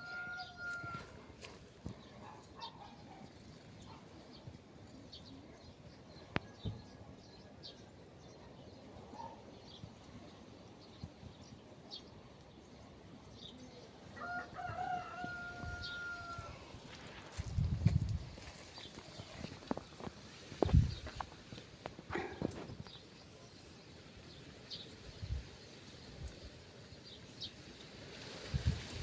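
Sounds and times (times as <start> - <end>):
rooster crowing: 0.0 - 1.2, 14.2 - 16.7.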